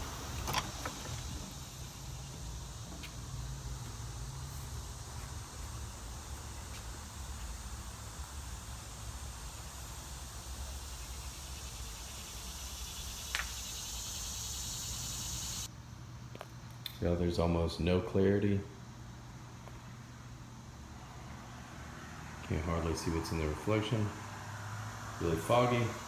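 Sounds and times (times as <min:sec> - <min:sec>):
faint high hiss: 0:00.0 - 0:15.7.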